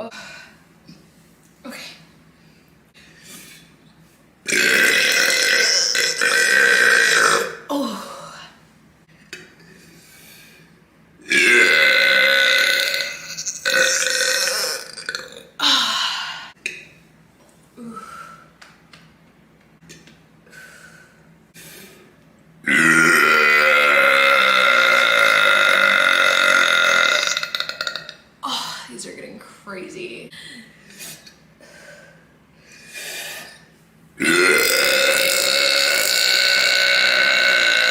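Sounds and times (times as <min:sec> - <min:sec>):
woman burping: 0:04.5 - 0:08.1, 0:11.3 - 0:16.1, 0:22.6 - 0:28.8, 0:34.2 - 0:37.9.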